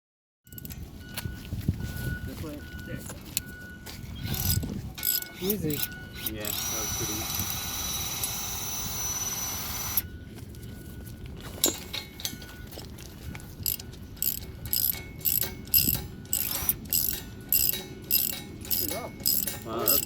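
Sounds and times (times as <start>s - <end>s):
ratchet wrench clicking: 0.5s - 0.8s, 4.3s - 9.2s, 13.6s - 20.0s.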